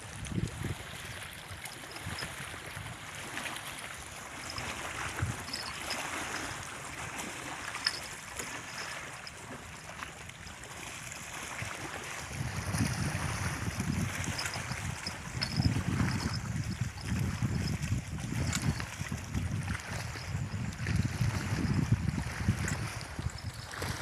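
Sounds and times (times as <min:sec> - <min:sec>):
moving water: 0:00.0 - 0:24.0
wind: 0:00.0 - 0:24.0
handling clicks and knocks: 0:07.7 - 0:08.8, 0:13.8 - 0:16.8.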